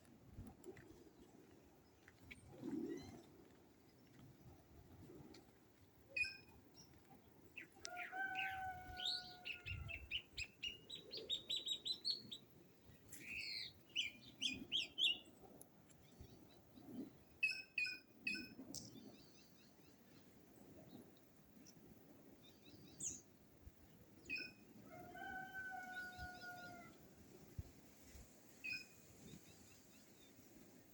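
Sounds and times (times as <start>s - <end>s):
birds singing and calling: 7.6s - 12.4s, 13.1s - 15.3s.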